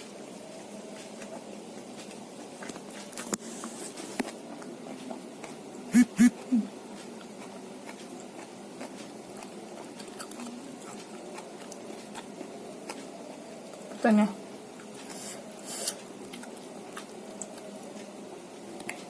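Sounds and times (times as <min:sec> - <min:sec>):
steady background hum: 0:00.0 - 0:19.0
soft chewing: 0:00.2 - 0:19.0
mouth clicks: 0:05.9 - 0:06.4.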